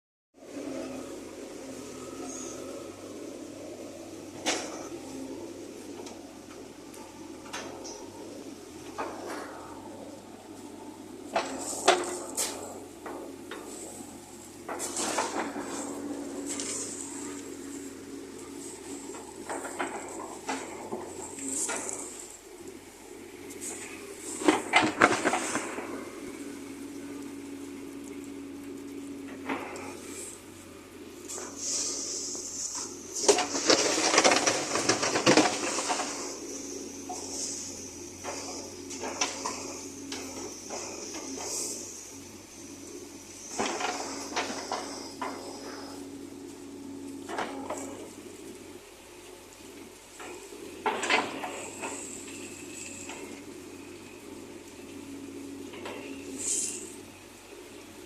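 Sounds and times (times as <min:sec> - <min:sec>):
backhoe engine humming: 0:00.4 - 0:58.0
backhoe knocks and clatters: 0:08.8 - 0:22.5, 0:23.6 - 0:26.3, 0:32.4 - 0:42.0, 0:43.4 - 0:46.3, 0:47.2 - 0:48.3, 0:50.2 - 0:54.0
metal bucket clanking and scraping: 0:31.6 - 0:36.4.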